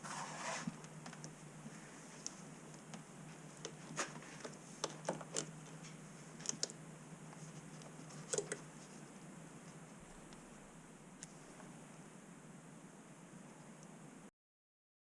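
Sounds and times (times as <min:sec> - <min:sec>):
faint steady hum: 0:00.0 - 0:14.3.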